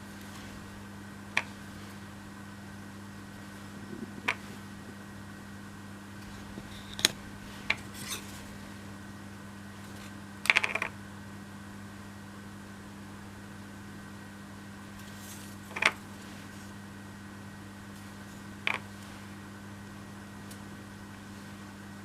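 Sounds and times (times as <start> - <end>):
steady low hum: 0.0 - 22.0
wooden pieces clicking on tabletop: 10.5 - 10.9.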